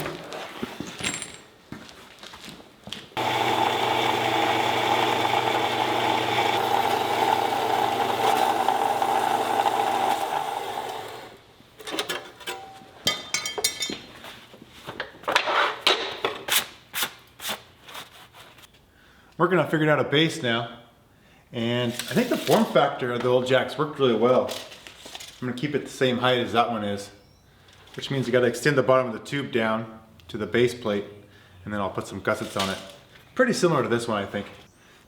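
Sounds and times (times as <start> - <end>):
bandsaw cutting metal tube: 3.2 - 11.4.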